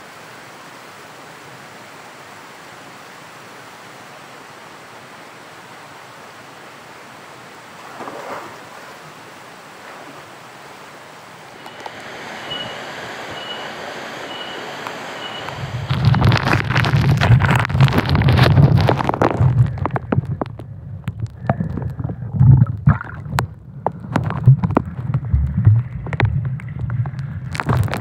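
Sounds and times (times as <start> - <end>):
waterfall rushing: 0.0 - 17.6
short high-pitched tones: 11.6 - 16.3.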